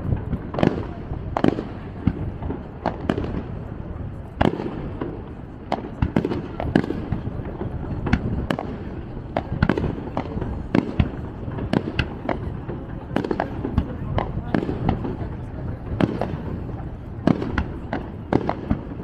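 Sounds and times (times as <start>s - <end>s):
fireworks bangs and crackles: 0.0s - 19.0s.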